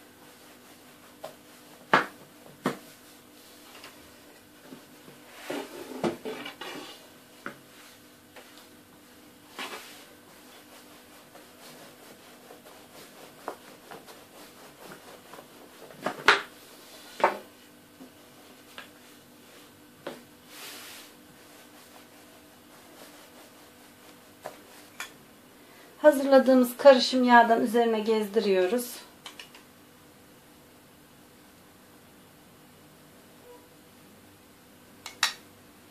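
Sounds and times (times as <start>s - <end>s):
rolling pin rubbing dough: 0.0s - 4.2s, 4.8s - 7.1s, 9.5s - 17.4s, 20.4s - 25.0s.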